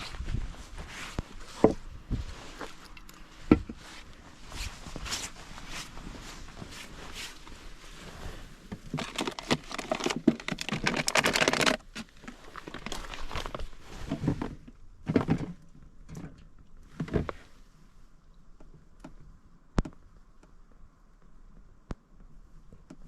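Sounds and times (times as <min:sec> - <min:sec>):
crinkling and rustling: 0:00.0 - 0:17.7.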